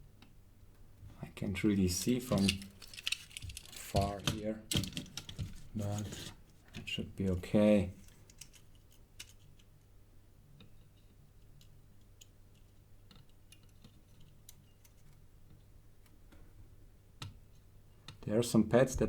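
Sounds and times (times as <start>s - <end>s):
small clicks and taps: 10.6s - 16.4s.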